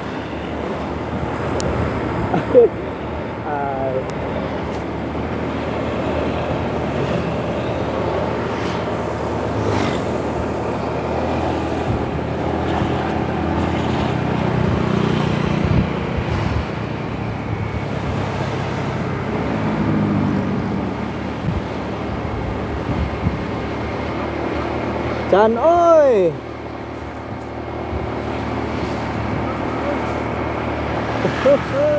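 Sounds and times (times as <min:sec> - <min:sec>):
steady road noise: 0:00.0 - 0:31.9
vehicle engine passing by: 0:03.5 - 0:25.4.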